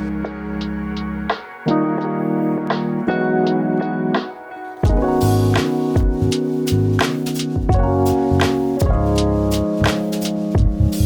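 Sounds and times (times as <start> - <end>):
drum beat with heavy bass: 0.0 - 1.6, 4.8 - 11.0
sustained instrumental chords: 0.0 - 11.0.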